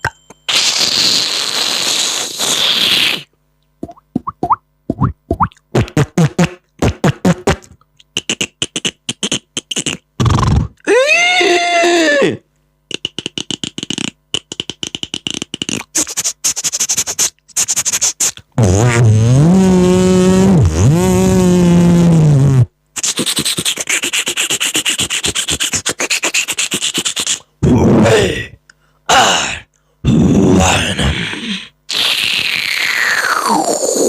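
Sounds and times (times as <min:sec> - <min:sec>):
beatboxed clicks and crackles: 0:00.3 - 0:10.9, 0:12.5 - 0:27.6, 0:31.0 - 0:34.0
held vocal tone: 0:27.6 - 0:34.0.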